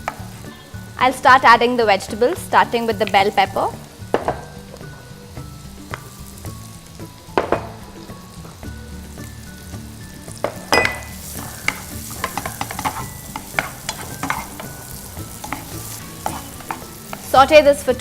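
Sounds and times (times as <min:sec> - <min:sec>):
peppers sizzling in a pan: 0:00.0 - 0:18.0
utensil knocking pan: 0:10.5 - 0:17.6
utensil scraping a pan: 0:11.1 - 0:17.6.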